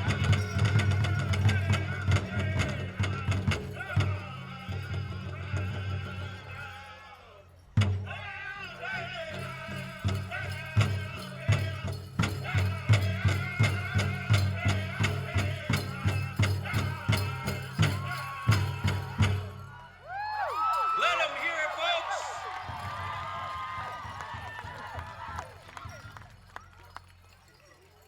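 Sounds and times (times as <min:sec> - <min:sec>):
men singing high wavering voices: 0:00.0 - 0:19.9.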